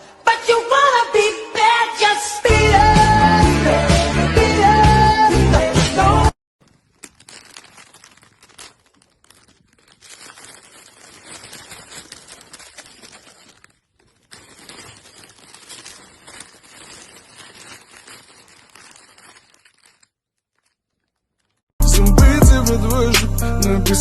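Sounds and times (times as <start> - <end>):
faint rustling and crackling: 6.6 - 21.7.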